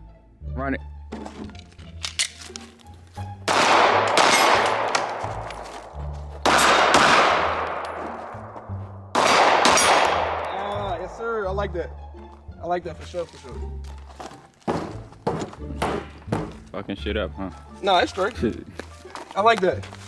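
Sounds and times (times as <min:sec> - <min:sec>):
background music: 0:00.0 - 0:20.0
pistol gunshots: 0:03.4 - 0:11.1.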